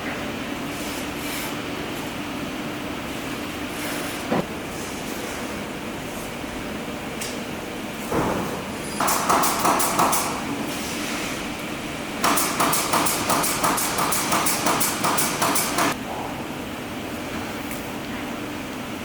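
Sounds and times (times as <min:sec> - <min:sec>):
machine making rapid sharp knocks: 0:08.2 - 0:10.4, 0:12.2 - 0:16.0.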